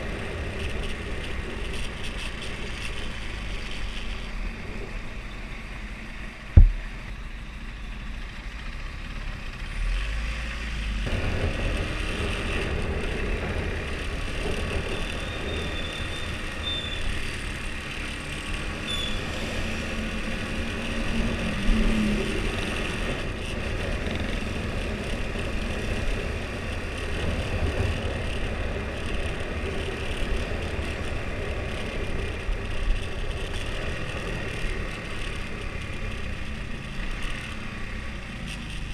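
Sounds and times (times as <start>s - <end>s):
road and wind noise: 0.0s - 38.9s
sharp knock: 6.6s - 6.8s.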